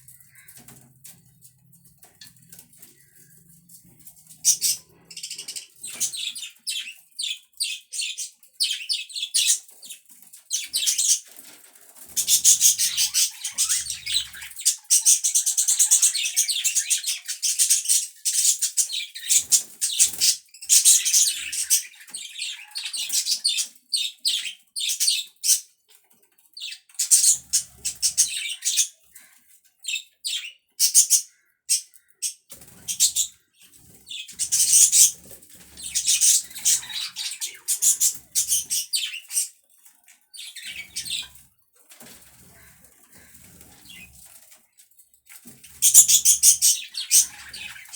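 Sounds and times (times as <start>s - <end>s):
budgerigars chattering: 4.4s - 9.6s, 12.1s - 25.6s, 30.3s - 33.4s, 34.0s - 39.6s, 40.4s - 41.3s, 45.7s - 47.9s.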